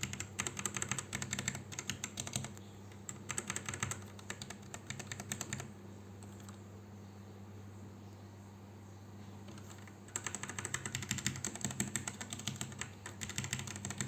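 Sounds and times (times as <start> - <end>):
mechanical keyboard typing: 0.0 - 6.6, 9.5 - 14.0
low steady hum: 0.0 - 14.0.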